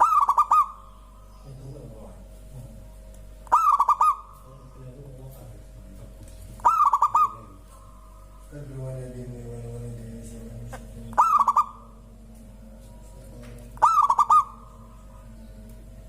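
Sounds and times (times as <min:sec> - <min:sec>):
dove cooing: 0:00.0 - 0:01.9, 0:03.4 - 0:04.9, 0:06.5 - 0:08.4, 0:09.4 - 0:12.3, 0:13.3 - 0:16.0
low drawn-out bird call: 0:00.0 - 0:05.0, 0:06.5 - 0:08.5, 0:10.6 - 0:12.2, 0:13.0 - 0:16.0.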